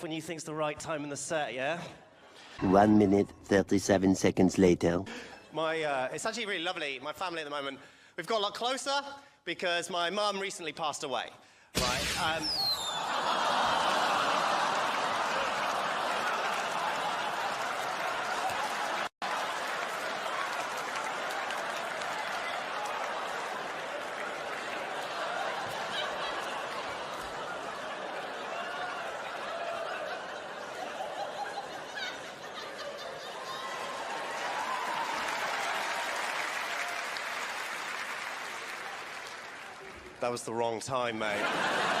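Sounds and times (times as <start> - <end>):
audience laughing: 12.8 - 20.2, 21.0 - 34.4, 41.1 - 42.0
audience applauding: 12.8 - 40.4.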